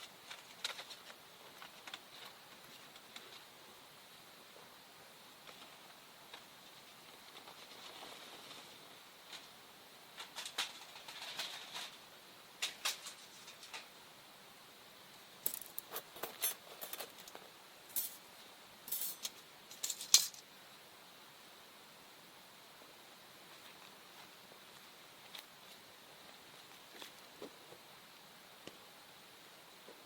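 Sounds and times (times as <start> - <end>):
small hard objects clicking: 15.4 - 18.2.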